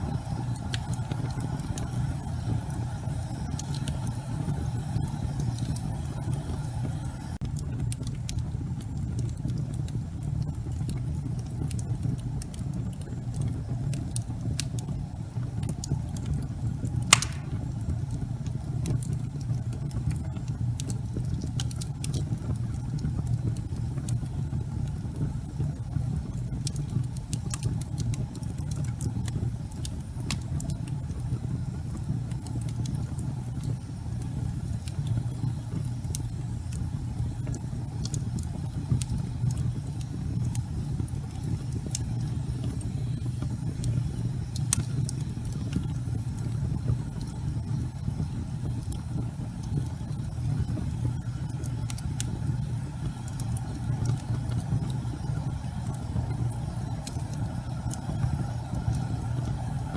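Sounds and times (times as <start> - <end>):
fire crackling: 0.0 - 59.9
fire rumbling: 0.0 - 59.9
loud pop from fire: 17.1 - 17.9.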